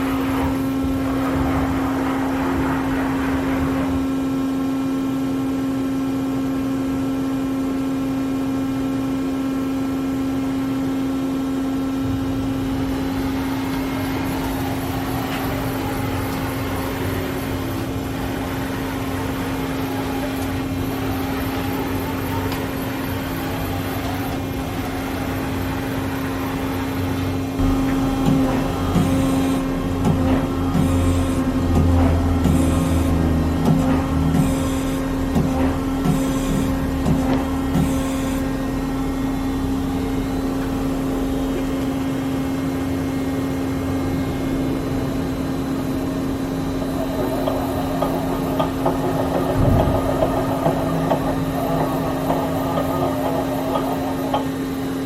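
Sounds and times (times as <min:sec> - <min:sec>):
machine hum: 0:00.0 - 0:55.0.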